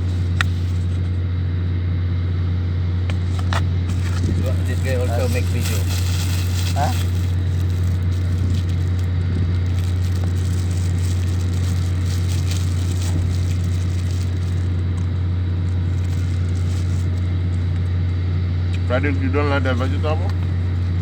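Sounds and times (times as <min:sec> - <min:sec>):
faint rustles and clicks: 0:00.0 - 0:01.2, 0:03.1 - 0:18.0
machinery hum: 0:00.0 - 0:21.0.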